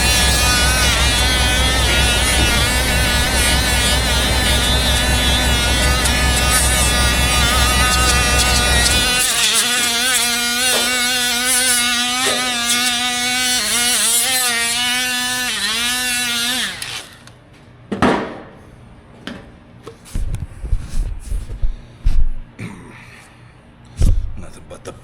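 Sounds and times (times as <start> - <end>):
scraping burst: 0.0 - 17.3
angle grinder running: 0.0 - 17.4.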